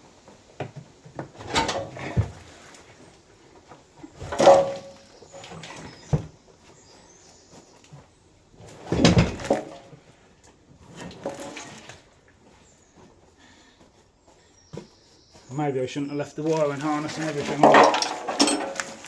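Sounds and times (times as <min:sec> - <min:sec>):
fuel tank clunking and scraping: 0:00.6 - 0:07.6, 0:08.6 - 0:12.6, 0:16.4 - 0:19.0.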